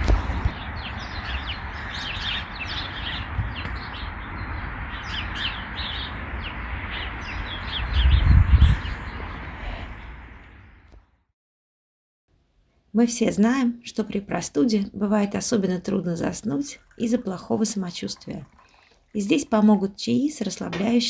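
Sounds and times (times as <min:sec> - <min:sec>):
songbirds chirping: 0:00.0 - 0:11.0, 0:13.1 - 0:21.0.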